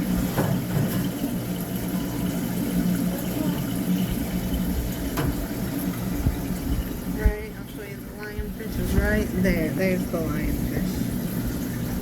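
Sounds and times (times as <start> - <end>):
aquarium pumps humming: 0.0 - 12.0
water rushing and trickling: 0.0 - 12.0.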